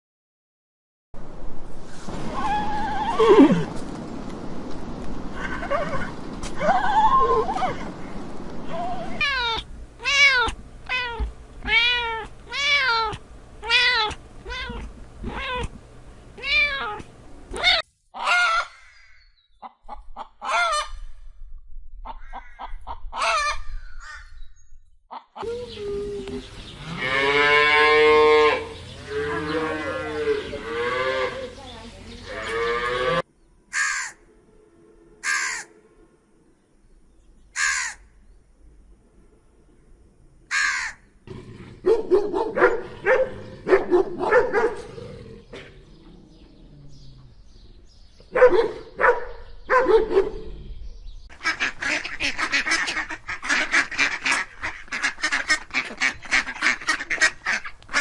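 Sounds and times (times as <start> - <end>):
cow mooing: 26.8 - 31.5, 32.3 - 33.2
geese honking: 35.2 - 35.8, 51.3 - 58.0
short harsh animal cries: 35.2 - 35.8.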